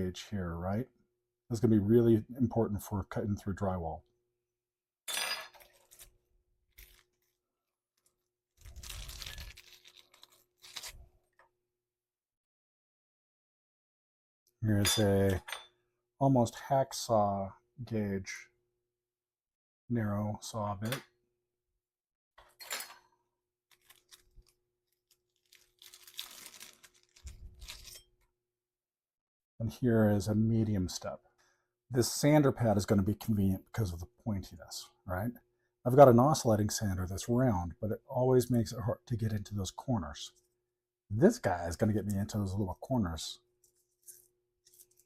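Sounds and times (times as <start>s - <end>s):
plastic packaging crinkling: 5.6s - 11.1s, 23.7s - 28.1s, 43.6s - 45.0s.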